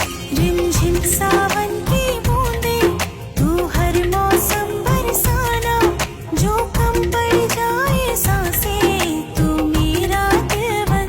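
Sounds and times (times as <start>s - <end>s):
instrumental song with steady beat: 0.0s - 11.0s.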